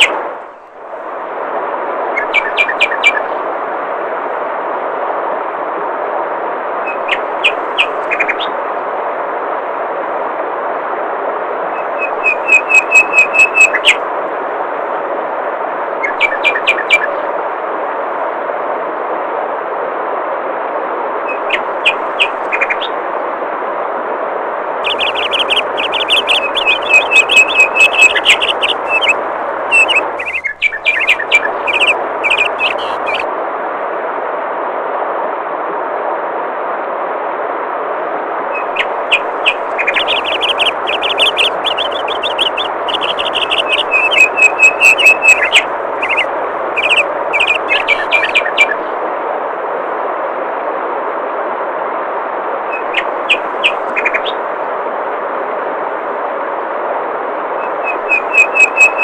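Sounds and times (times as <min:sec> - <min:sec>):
songbirds singing: 0:00.0 - 0:00.7, 0:02.2 - 0:03.3, 0:06.9 - 0:08.6, 0:11.8 - 0:14.0, 0:16.0 - 0:17.2, 0:21.3 - 0:23.0, 0:24.8 - 0:33.3, 0:38.6 - 0:48.8, 0:52.7 - 0:54.4, 0:57.6 - 0:59.0
flowing water rushing: 0:24.8 - 0:33.3, 0:38.2 - 0:49.1.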